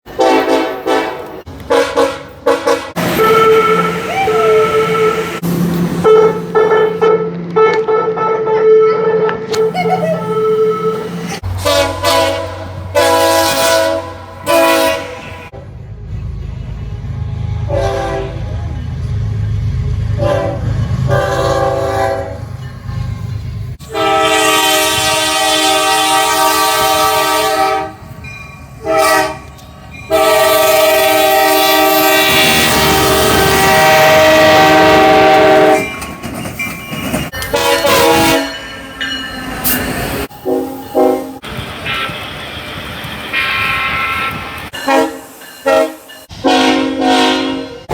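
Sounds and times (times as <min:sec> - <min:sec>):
train air horn blasts: 0:00.1 - 0:05.4, 0:06.0 - 0:09.6, 0:10.2 - 0:15.6, 0:16.7 - 0:18.6, 0:20.2 - 0:22.5, 0:23.8 - 0:28.1, 0:28.8 - 0:29.5, 0:30.1 - 0:35.9, 0:37.4 - 0:38.6, 0:40.2 - 0:42.3, 0:43.3 - 0:47.9
low train rumble: 0:00.1 - 0:47.9.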